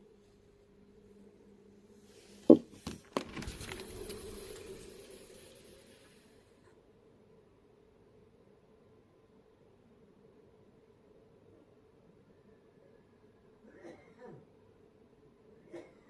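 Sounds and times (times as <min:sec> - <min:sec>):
window knocks: 0:02.5 - 0:03.4
window sash sliding: 0:02.5 - 0:04.7.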